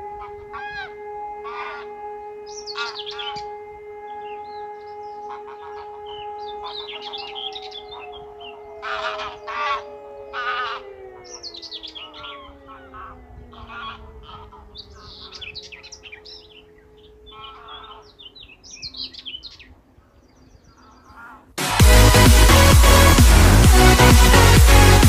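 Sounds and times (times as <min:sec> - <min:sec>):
civil-defence siren winding down: 0:00.0 - 0:19.0, 0:21.6 - 0:25.0
small birds chirping: 0:02.4 - 0:21.6
loud electronic music: 0:21.6 - 0:25.0.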